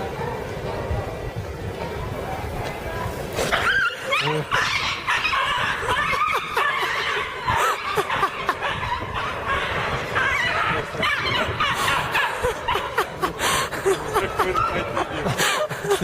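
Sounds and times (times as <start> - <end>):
people laughing and snickering: 3.3 - 16.0.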